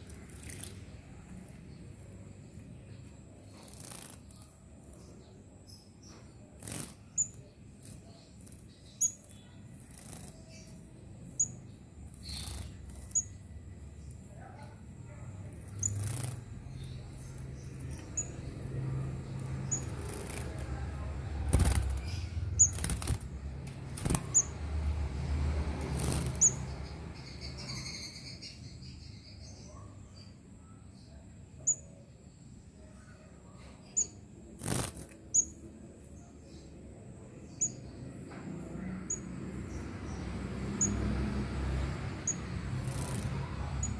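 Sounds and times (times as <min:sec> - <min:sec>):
wings fluttering: 0:00.0 - 0:00.9, 0:03.5 - 0:05.2, 0:06.6 - 0:10.8, 0:12.1 - 0:13.4, 0:15.5 - 0:24.7, 0:25.6 - 0:27.0, 0:34.6 - 0:35.4, 0:42.2 - 0:43.9
thin high bird chirps: 0:00.0 - 0:24.6, 0:25.9 - 0:32.1, 0:32.9 - 0:36.7, 0:37.4 - 0:38.0, 0:42.2 - 0:43.9.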